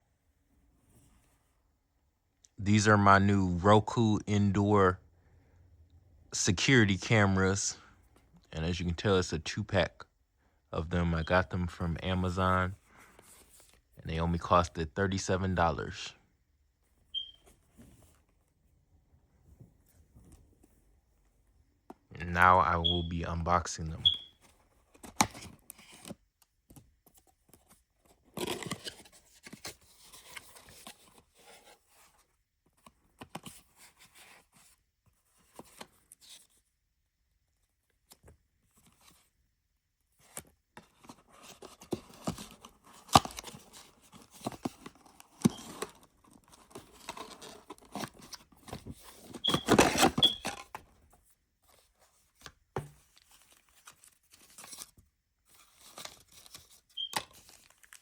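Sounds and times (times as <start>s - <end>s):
cardboard tearing and rustling: 28.2s - 31.7s, 41.0s - 50.8s.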